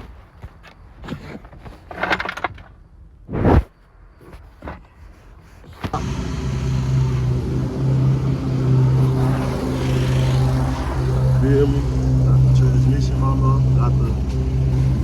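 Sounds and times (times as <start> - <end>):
car engine idling: 6.0 - 15.0.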